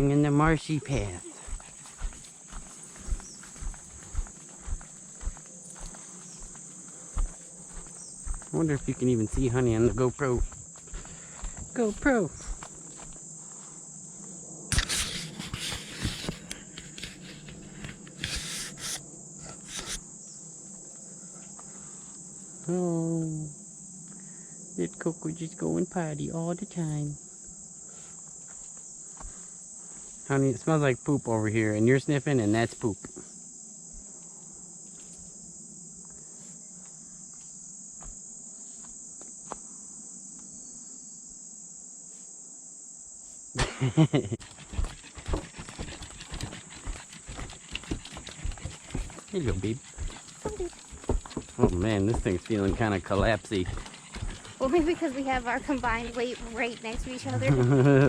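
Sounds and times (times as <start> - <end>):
footsteps through grass: 0.0 - 19.0, 19.6 - 20.0, 44.4 - 58.0
high-pitched insect chorus: 0.0 - 58.0.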